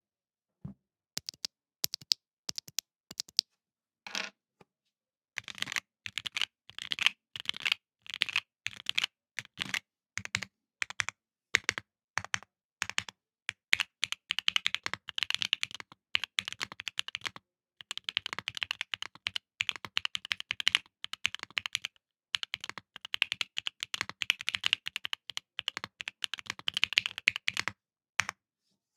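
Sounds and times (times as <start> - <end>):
mechanical keyboard typing: 1.2 - 3.4, 5.4 - 7.6, 13.8 - 27.7.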